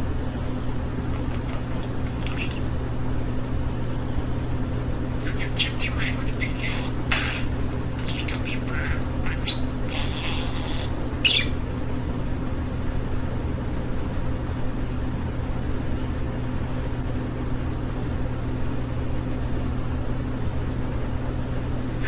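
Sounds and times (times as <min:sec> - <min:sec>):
steady low hum: 0:00.0 - 0:22.0
budgerigar chirping: 0:01.2 - 0:02.7, 0:05.2 - 0:11.6.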